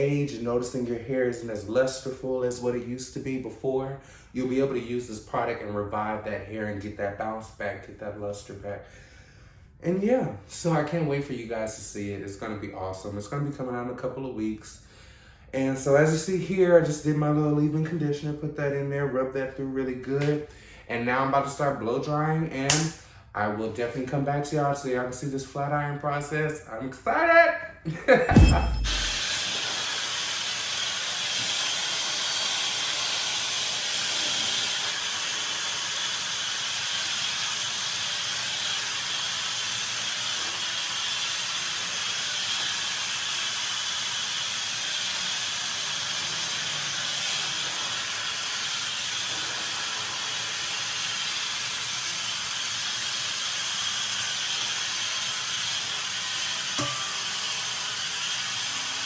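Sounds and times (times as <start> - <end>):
hair dryer running: 28.8 - 59.0.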